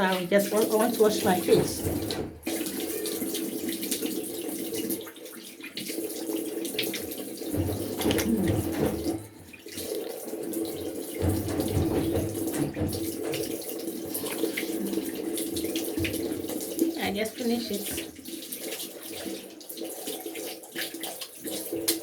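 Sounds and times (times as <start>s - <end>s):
hands splashing water: 0.0s - 16.8s
tap running into a sink: 0.0s - 19.5s, 20.2s - 22.0s.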